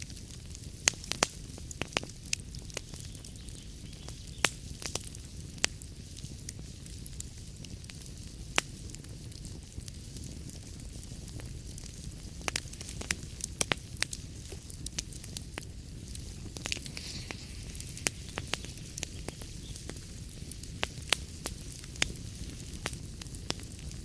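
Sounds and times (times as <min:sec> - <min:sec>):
fire crackling and popping: 0:00.0 - 0:24.0
low rumble of flames: 0:00.0 - 0:24.0
brief hiss: 0:16.7 - 0:19.8.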